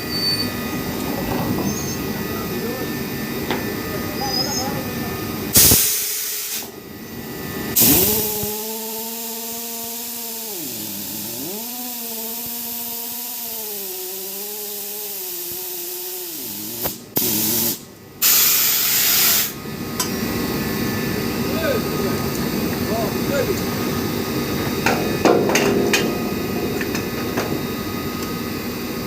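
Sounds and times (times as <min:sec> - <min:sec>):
machine hum: 0:00.0 - 0:18.2, 0:19.4 - 0:29.0
air hiss bursts: 0:05.5 - 0:06.7, 0:07.8 - 0:19.6.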